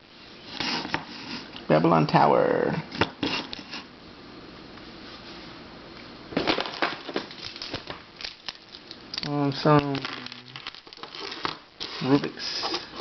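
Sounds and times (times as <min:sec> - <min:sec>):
puzzle pieces clicking and clattering: 0:06.4 - 0:12.0.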